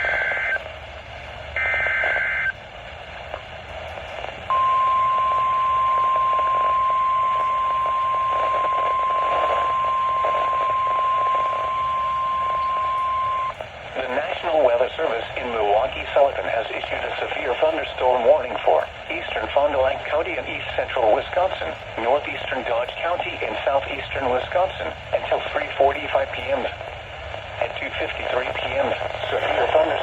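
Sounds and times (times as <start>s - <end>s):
radio static hiss: 0.0s - 30.0s
screechy two-tone data bursts: 4.5s - 13.6s
steady high alarm tone: 4.5s - 13.6s.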